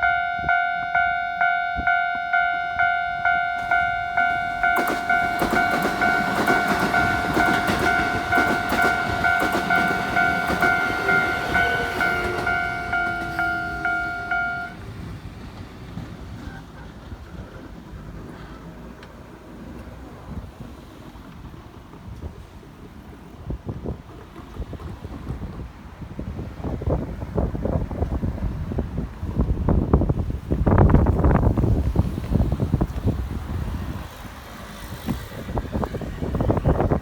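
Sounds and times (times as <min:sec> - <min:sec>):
level crossing alarm ringing: 0:00.0 - 0:14.8
train wheels clicking over rails: 0:03.2 - 0:29.3, 0:30.1 - 0:37.0.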